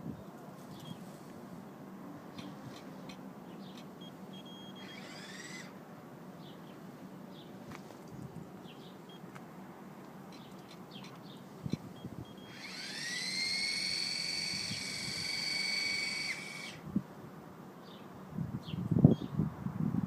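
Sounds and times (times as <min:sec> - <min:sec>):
high-pitched small motor whine: 0:04.3 - 0:05.8, 0:11.9 - 0:16.8.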